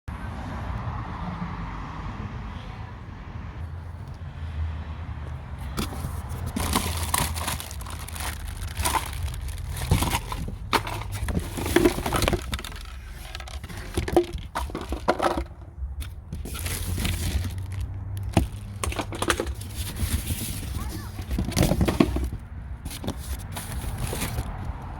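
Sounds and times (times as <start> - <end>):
rustling and crinkling of handled things: 5.6 - 24.9.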